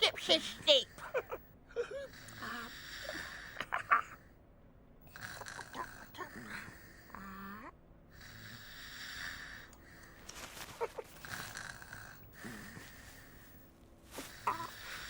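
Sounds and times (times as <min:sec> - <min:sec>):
breathy snores: 0:02.0 - 0:04.2, 0:05.1 - 0:10.2, 0:10.8 - 0:15.0.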